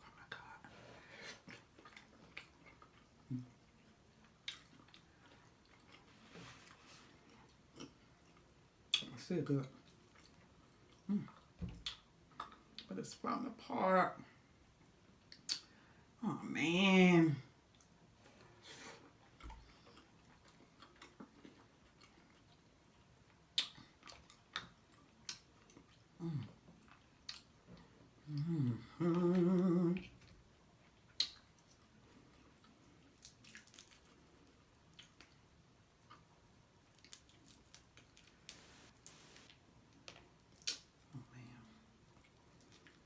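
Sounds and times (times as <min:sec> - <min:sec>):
person chewing and lip smacking: 0:01.3 - 0:06.1, 0:07.3 - 0:12.9, 0:15.2 - 0:15.7, 0:19.0 - 0:28.5, 0:29.1 - 0:41.0
person humming mmm: 0:26.2 - 0:26.6, 0:28.2 - 0:30.1.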